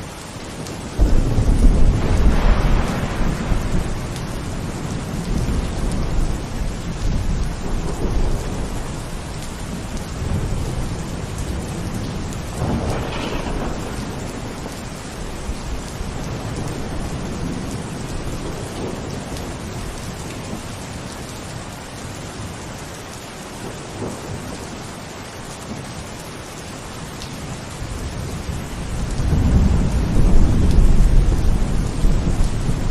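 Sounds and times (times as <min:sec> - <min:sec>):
steady rain falling: 0:00.0 - 0:32.9
low thunder rumbling: 0:00.5 - 0:20.7, 0:27.9 - 0:32.9.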